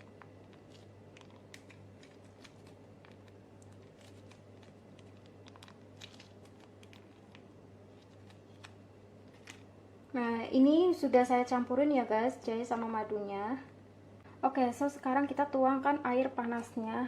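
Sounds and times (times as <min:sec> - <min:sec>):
plastic sachet crinkling: 0:00.0 - 0:09.8
low electrical hum: 0:00.0 - 0:17.0.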